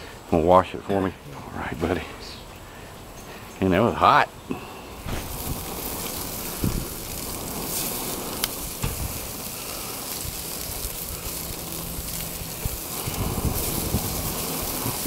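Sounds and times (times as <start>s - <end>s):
meat sizzling on a grill: 5.0s - 15.0s.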